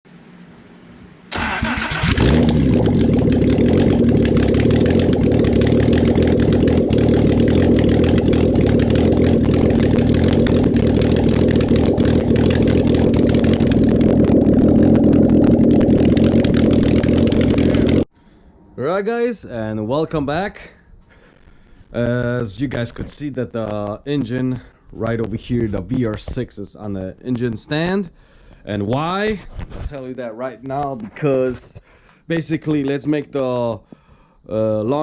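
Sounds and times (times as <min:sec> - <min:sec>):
car engine starting and running: 0:01.2 - 0:18.1.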